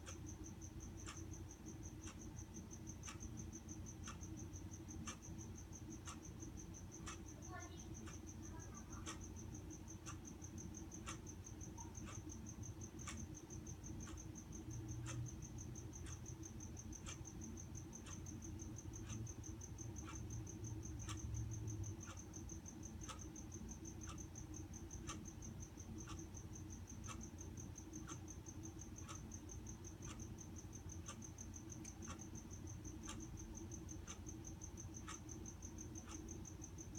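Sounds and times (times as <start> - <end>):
sharp tick: 11.0 - 36.9.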